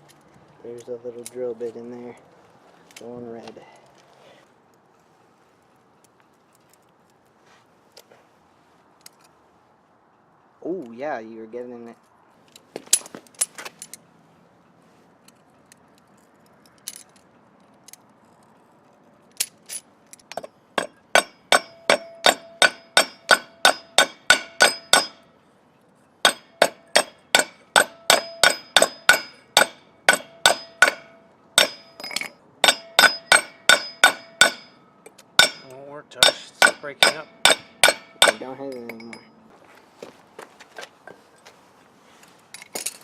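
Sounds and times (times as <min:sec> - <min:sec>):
hammer clanging on metal: 0:20.3 - 0:25.3, 0:26.2 - 0:34.8, 0:35.4 - 0:39.4.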